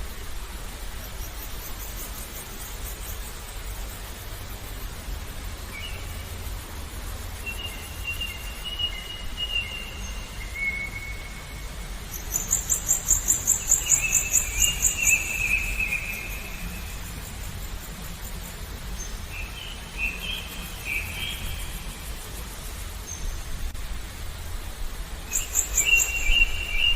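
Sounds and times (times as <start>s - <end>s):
songbirds whistling: 7.4s - 16.9s, 25.3s - 26.9s.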